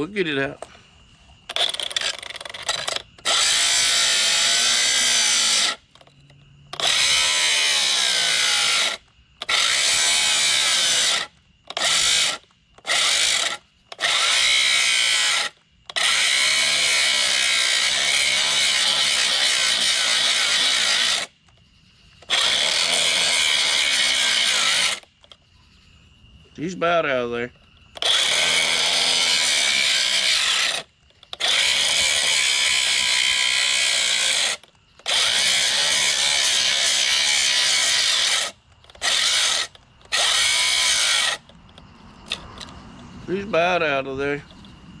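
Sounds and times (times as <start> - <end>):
cordless drill running under load: 1.5 - 5.8, 6.8 - 21.3, 22.3 - 25.1, 28.0 - 41.4.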